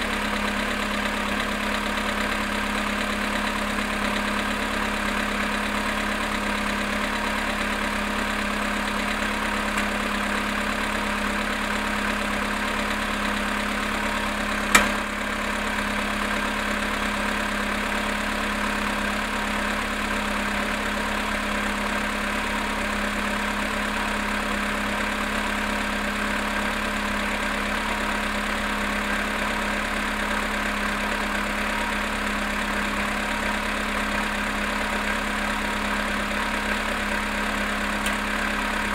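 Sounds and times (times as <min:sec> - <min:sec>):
car engine idling with knock: 0:00.0 - 0:38.9
sharp click: 0:14.7 - 0:15.0.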